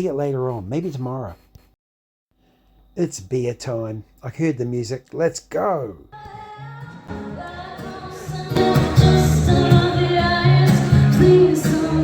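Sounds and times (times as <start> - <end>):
person singing: 6.1 - 12.0
guitar accompaniment: 6.3 - 12.0.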